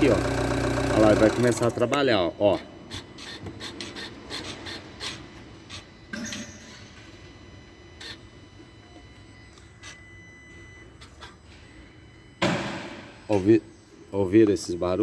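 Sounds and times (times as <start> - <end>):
electric actuators clicking: 0.0 - 5.9.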